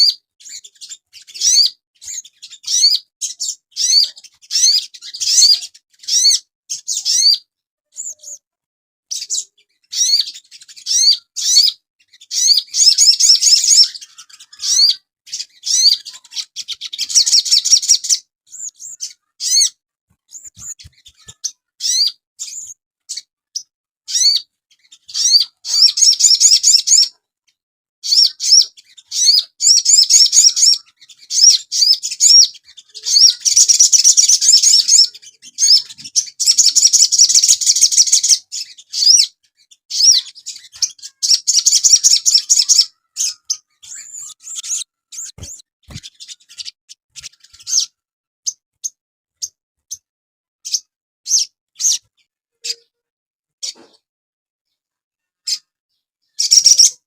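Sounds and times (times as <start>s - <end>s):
songbird singing: 9.1s - 27.2s, 28.0s - 50.0s, 56.3s - 57.0s.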